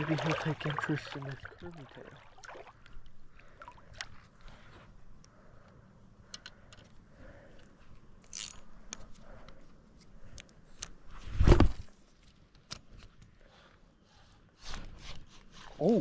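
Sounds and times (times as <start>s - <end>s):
fishing tackle clicking and scraping: 5.7s - 11.0s.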